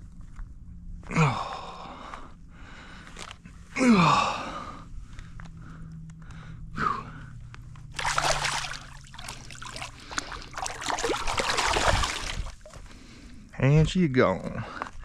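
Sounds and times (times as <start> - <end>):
water splashing and sloshing: 7.8 - 13.0.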